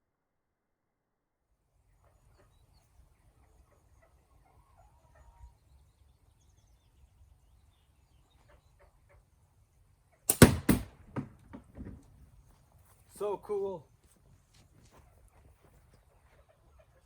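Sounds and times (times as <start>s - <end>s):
loud sharp bangs: 10.3s - 11.4s.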